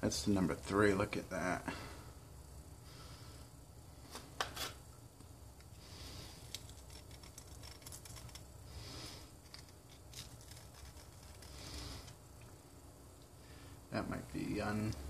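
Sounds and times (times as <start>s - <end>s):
soft breaths: 1.6s - 4.0s, 5.7s - 6.6s, 8.6s - 9.6s, 11.2s - 13.9s
small clicks and scrapes of handling: 6.4s - 8.5s, 9.4s - 12.2s.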